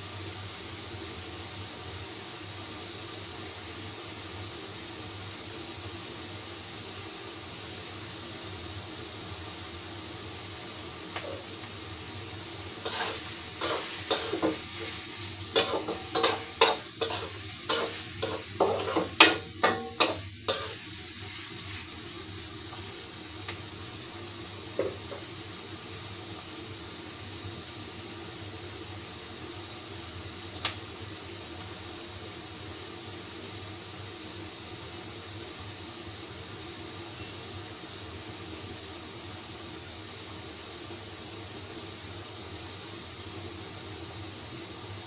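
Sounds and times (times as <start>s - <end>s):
low hiss: 0.0s - 45.0s
spatula scraping a pan: 12.6s - 21.9s, 24.8s - 25.3s
knocks on a pan: 15.6s - 20.7s, 24.8s - 25.2s.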